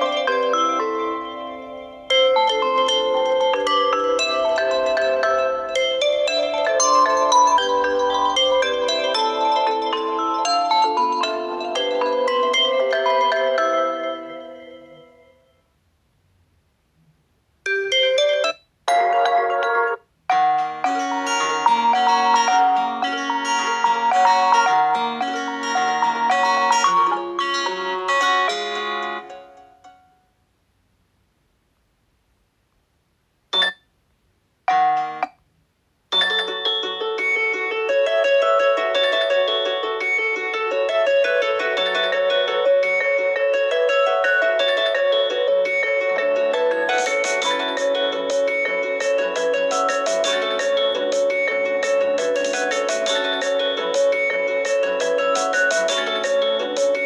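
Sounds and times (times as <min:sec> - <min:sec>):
bell-like mallet ringtone melody: 0:00.0 - 0:15.4, 0:17.7 - 0:30.2, 0:33.6 - 0:33.8, 0:34.7 - 0:35.4, 0:36.1 - 0:57.0
phone chime notes: 0:17.7 - 0:28.0, 0:33.5 - 0:33.9, 0:36.1 - 0:37.6.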